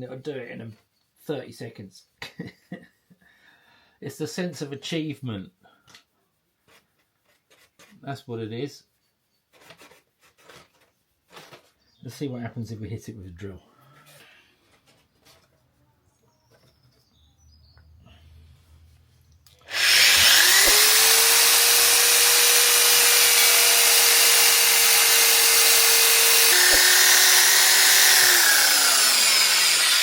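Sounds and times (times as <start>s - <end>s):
electric drill motor whine: 19.7s - 30.0s.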